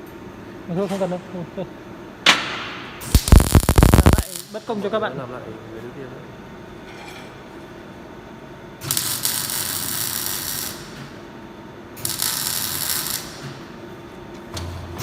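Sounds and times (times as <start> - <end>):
welding arc crackling: 3.0 - 4.7, 8.8 - 11.0, 12.0 - 13.6.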